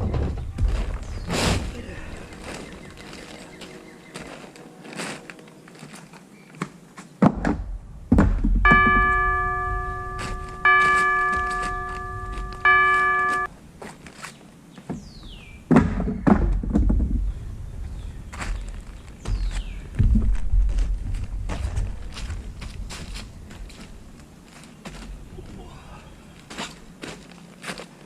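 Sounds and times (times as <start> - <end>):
heavy thunks and knocks: 7.2 - 12.7, 15.7 - 17.3, 19.2 - 22.7
bell-like chime ringing: 8.7 - 13.5.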